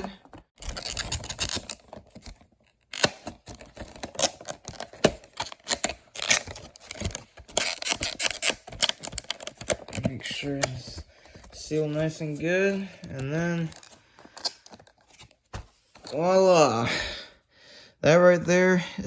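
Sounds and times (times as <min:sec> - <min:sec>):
plastic clicks and crackles: 0:00.2 - 0:11.0.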